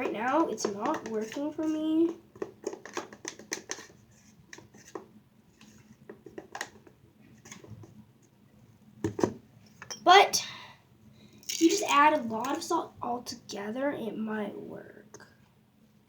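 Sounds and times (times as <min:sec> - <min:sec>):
clicks and taps of containers: 0:00.0 - 0:08.0, 0:11.4 - 0:12.7.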